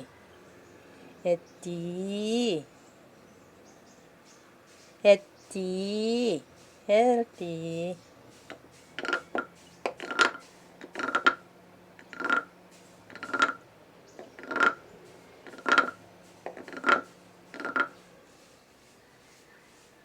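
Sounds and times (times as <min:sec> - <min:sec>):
wooden guiro rasping: 0:08.3 - 0:11.4, 0:12.0 - 0:13.6, 0:14.2 - 0:20.0.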